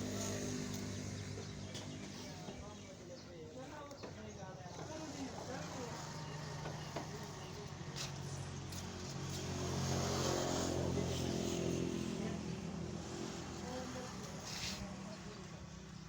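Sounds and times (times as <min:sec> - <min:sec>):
vehicle engine running: 0:00.0 - 0:02.4.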